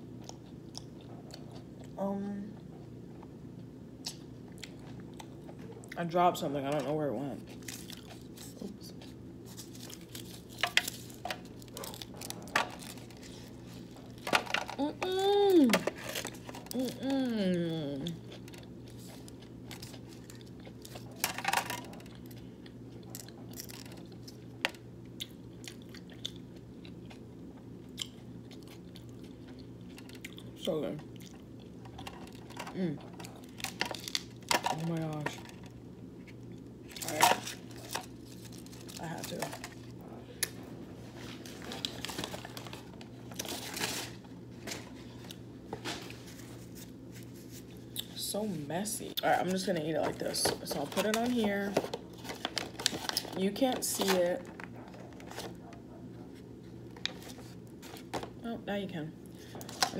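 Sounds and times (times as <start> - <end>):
person chewing food: 0.0 - 2.0, 2.6 - 6.0, 7.5 - 14.2, 22.0 - 34.4
low steady hum: 0.0 - 59.9
food wrapper crinkling: 9.4 - 17.2, 31.3 - 35.7, 36.3 - 40.6, 41.2 - 45.4, 49.5 - 55.8.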